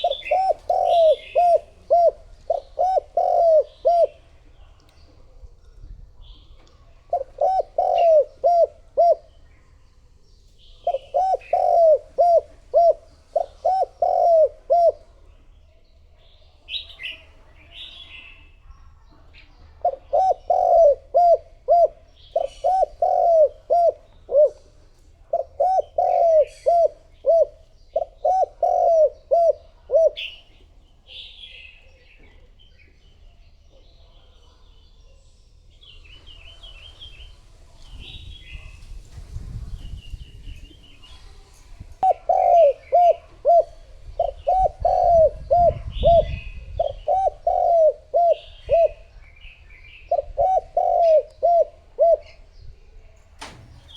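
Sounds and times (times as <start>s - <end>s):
dove cooing: 0.0s - 4.4s, 7.0s - 9.4s, 10.8s - 15.3s, 19.8s - 31.8s, 42.0s - 49.2s, 50.0s - 52.6s, 53.4s - 53.9s
small birds chirping: 0.0s - 53.9s.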